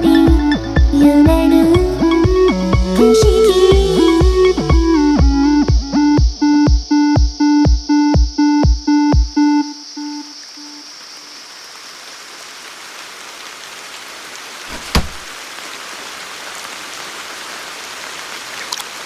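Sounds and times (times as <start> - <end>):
music: 0.0 - 10.8
rain hissing: 10.1 - 19.0
sharp thump: 14.7 - 15.3.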